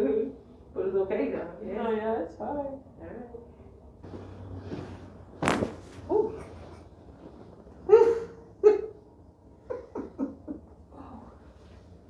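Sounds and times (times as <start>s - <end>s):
person laughing: 9.7s - 10.7s.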